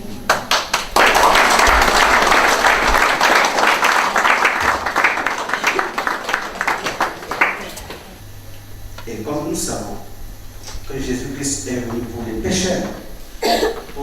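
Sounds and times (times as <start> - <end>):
congregation applauding: 0.3 - 8.2.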